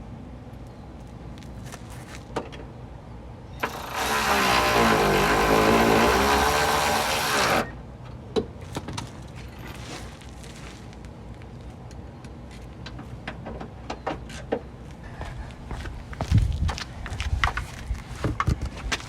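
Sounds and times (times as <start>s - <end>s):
impact wrench running: 3.6s - 7.7s.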